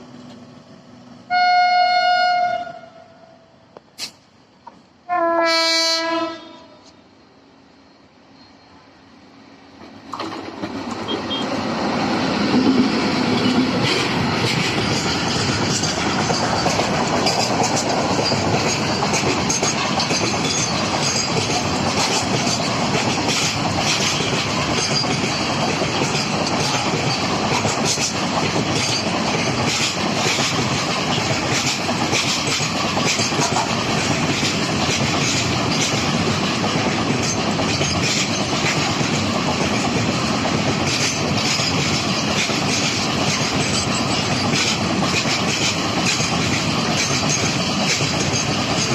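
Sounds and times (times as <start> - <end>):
train passing at speed: 0.0 - 48.9
wheels clacking over rail joints: 9.8 - 48.9.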